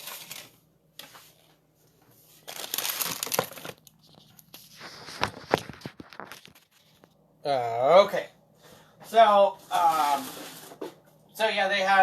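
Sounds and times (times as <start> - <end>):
wrapping crinkling and rustling: 0.0 - 1.5, 2.2 - 7.2.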